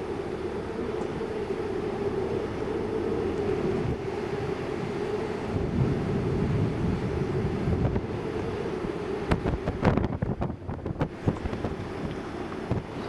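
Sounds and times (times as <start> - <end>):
gusty wind buffeting microphone: 0.0 - 13.0.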